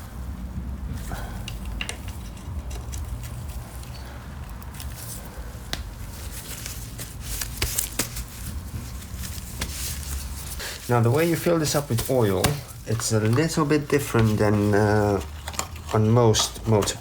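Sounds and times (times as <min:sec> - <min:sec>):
steady low rumble: 0:00.0 - 0:11.6
metal parts and hand tools clicking: 0:01.3 - 0:05.2, 0:11.3 - 0:17.0.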